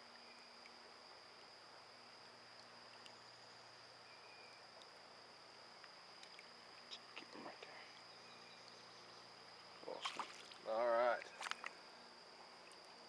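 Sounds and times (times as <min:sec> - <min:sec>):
faint high-pitched whine: 0:00.0 - 0:13.0
faint ticks: 0:02.5 - 0:03.2, 0:04.7 - 0:05.0, 0:05.8 - 0:08.9.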